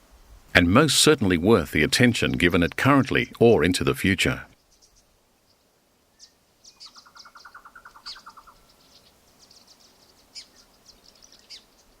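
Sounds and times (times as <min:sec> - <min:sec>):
birds chirping: 0:01.1 - 0:12.0
bird trill: 0:04.6 - 0:12.0.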